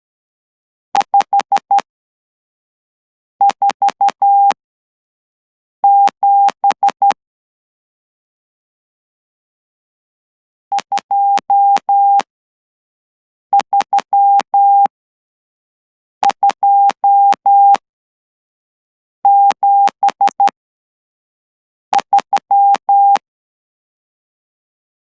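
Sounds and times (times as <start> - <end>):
morse code tones: 14.1 - 14.9, 22.4 - 23.2.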